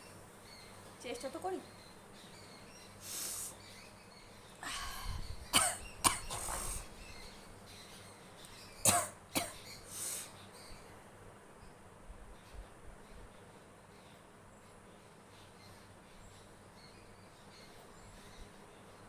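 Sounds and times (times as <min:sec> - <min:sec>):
drawn-in breath: 0:03.0 - 0:03.6, 0:04.6 - 0:05.3, 0:06.4 - 0:07.0, 0:09.8 - 0:10.4
sniff: 0:03.0 - 0:03.6, 0:06.4 - 0:06.9, 0:09.9 - 0:10.4.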